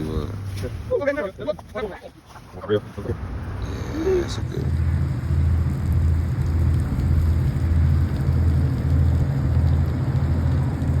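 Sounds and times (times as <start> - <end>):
rain hiss: 3.1 - 11.0
loud low pulsing rumble: 3.6 - 11.0.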